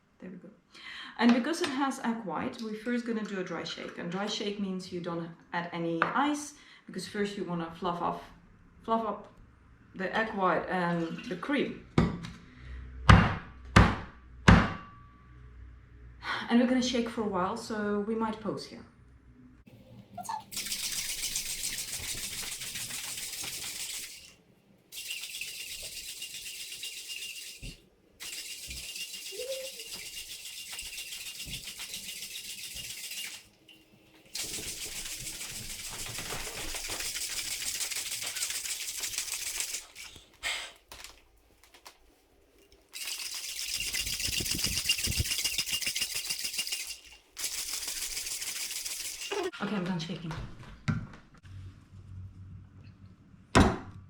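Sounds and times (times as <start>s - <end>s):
cocktail shaker shaking liquid: 20.2s - 42.0s, 42.6s - 49.6s.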